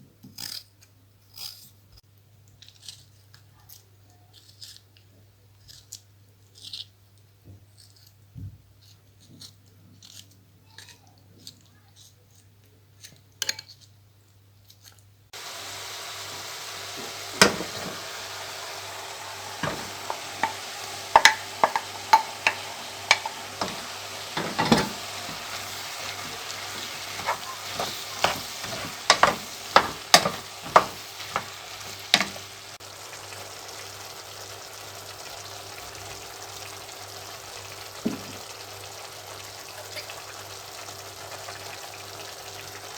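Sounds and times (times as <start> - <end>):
food sizzling in a frying pan: 15.3 - 42.9
utensil scraping a pan: 16.2 - 32.8.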